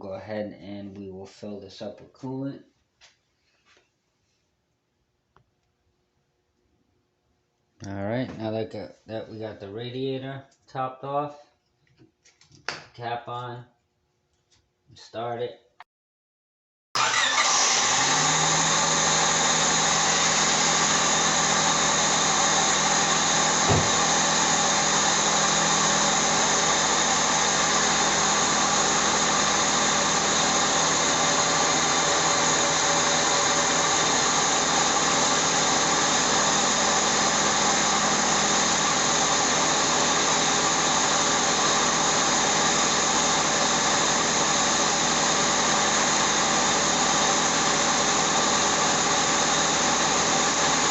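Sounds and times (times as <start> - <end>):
car engine idling: 17.0 - 49.4.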